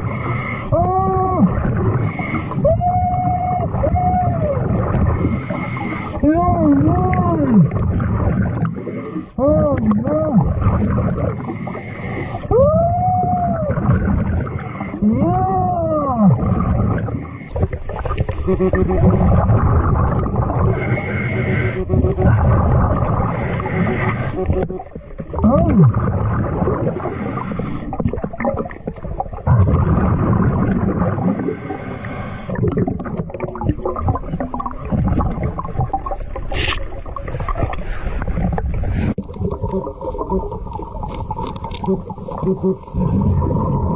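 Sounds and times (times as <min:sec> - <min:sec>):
boy groaning and moaning: 0:00.7 - 0:01.6, 0:06.2 - 0:07.7, 0:09.4 - 0:10.5, 0:12.5 - 0:13.8, 0:15.0 - 0:16.4
person howling: 0:00.7 - 0:01.6, 0:02.6 - 0:04.6, 0:06.2 - 0:07.7, 0:09.4 - 0:10.5, 0:12.5 - 0:13.8, 0:15.0 - 0:16.4.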